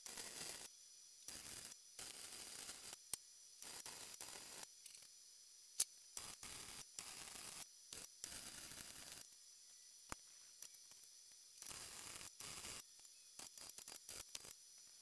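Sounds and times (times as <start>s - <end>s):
welding arc crackling: 0.0s - 0.7s, 1.3s - 3.0s, 6.2s - 9.3s, 11.6s - 12.8s, 13.4s - 14.5s.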